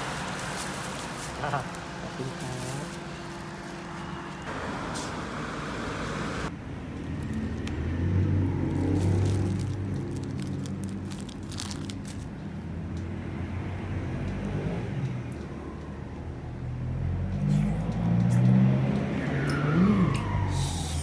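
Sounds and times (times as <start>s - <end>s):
vehicle engine running: 0.0s - 13.4s.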